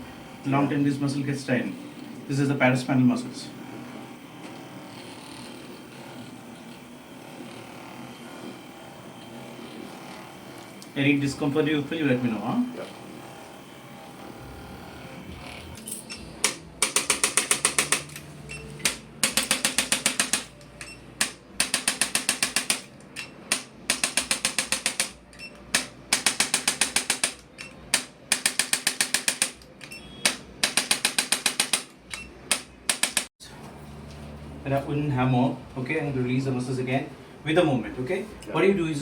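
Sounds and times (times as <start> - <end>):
percussion massager tapping: 16.4 - 18.2, 18.8 - 33.3.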